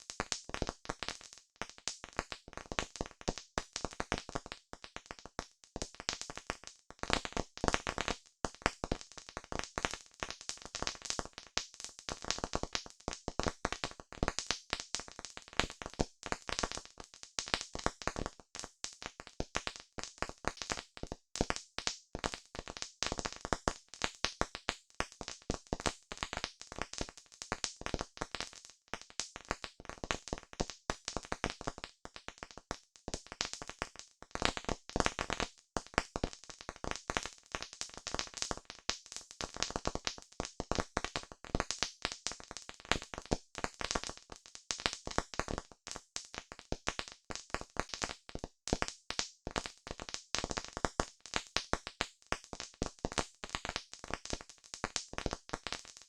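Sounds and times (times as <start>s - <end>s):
campfire crackling and popping: 7.1s - 15.1s, 33.1s - 44.2s, 44.8s - 55.9s.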